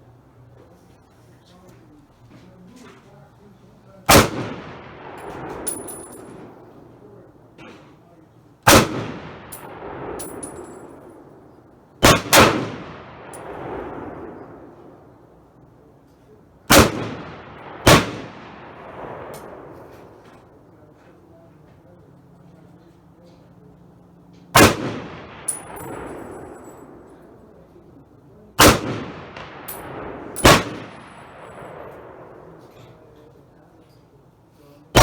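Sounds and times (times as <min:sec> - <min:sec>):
rifle shots with echoes: 0:04.1 - 0:16.0, 0:16.6 - 0:20.9, 0:24.5 - 0:33.8
light metallic clinks: 0:05.2 - 0:06.6, 0:09.5 - 0:11.3, 0:25.4 - 0:27.4, 0:29.7 - 0:32.0.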